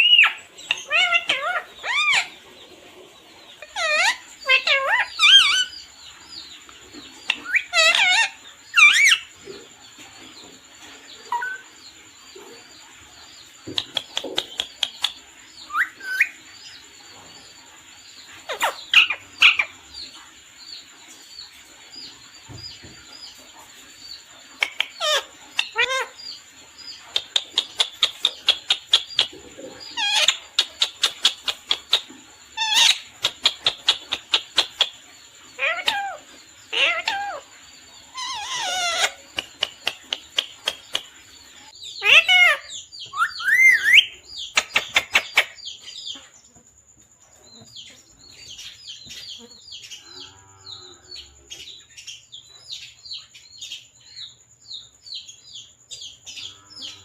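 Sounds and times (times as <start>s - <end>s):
parrot squawking: 0.0s - 2.3s, 3.6s - 5.7s, 7.4s - 9.3s, 24.6s - 26.2s, 29.9s - 32.0s, 32.6s - 34.9s, 35.6s - 37.5s, 38.1s - 39.2s, 42.0s - 45.6s
sharp clicky parrot calls: 13.7s - 16.3s, 24.6s - 26.2s, 27.1s - 35.0s, 38.1s - 41.1s, 42.0s - 46.2s.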